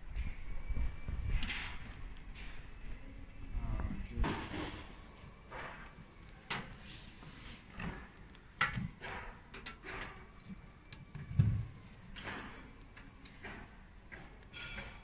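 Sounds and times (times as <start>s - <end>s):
machine parts knocking and scraping: 7.8s - 15.0s.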